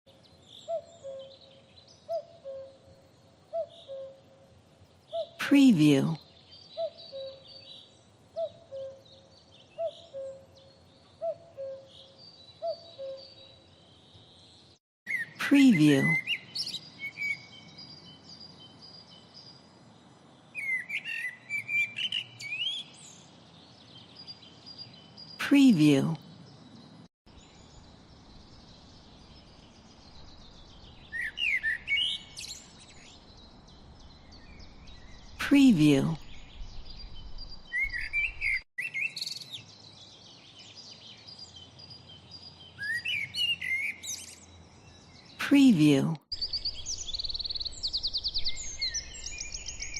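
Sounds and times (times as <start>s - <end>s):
songbirds twittering faintly: 0.1s - 49.9s
cuckoo calling: 2.0s - 2.9s, 3.5s - 4.2s, 8.4s - 9.1s, 9.8s - 10.6s, 11.2s - 13.4s.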